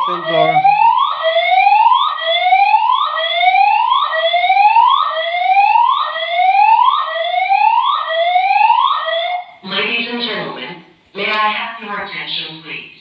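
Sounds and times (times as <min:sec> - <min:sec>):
fire alarm whoop: 0:00.0 - 0:09.6.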